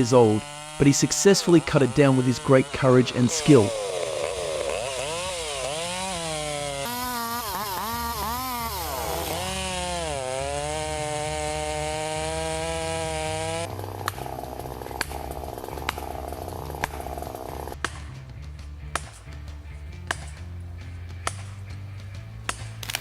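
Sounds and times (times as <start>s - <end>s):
chainsaw cutting wood: 0.0s - 18.2s, 19.9s - 21.6s, 22.4s - 23.0s.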